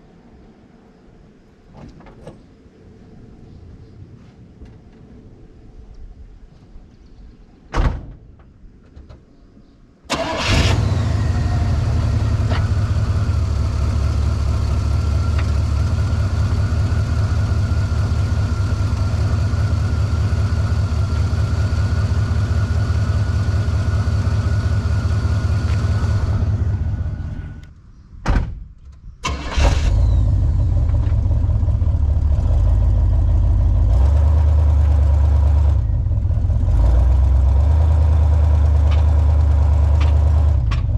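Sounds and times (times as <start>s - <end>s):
car engine starting and idling: 10.1s - 27.7s, 29.2s - 40.9s.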